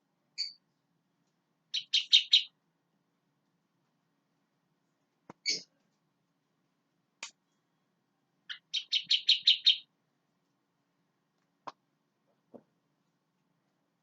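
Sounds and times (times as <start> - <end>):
bulbul chattering call: 1.7 - 2.5, 8.5 - 9.9.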